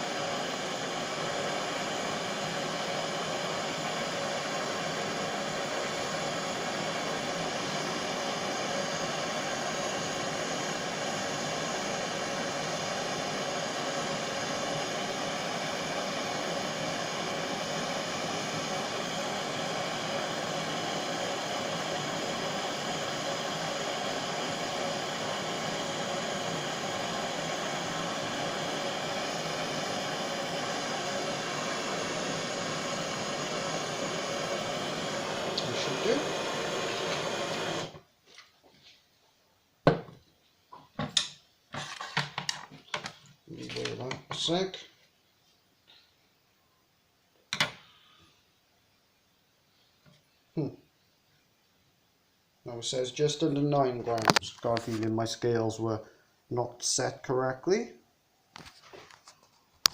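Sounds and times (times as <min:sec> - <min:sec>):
blowtorch flame hissing: 0:00.0 - 0:38.1, 0:52.7 - 0:55.9.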